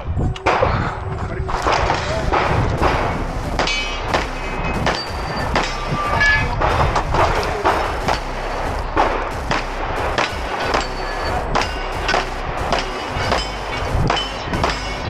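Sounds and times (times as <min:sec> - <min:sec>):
pistol shots: 0:01.5 - 0:15.0
background music: 0:01.6 - 0:15.0
steel plate metallic ring: 0:03.0 - 0:06.6, 0:10.2 - 0:15.0.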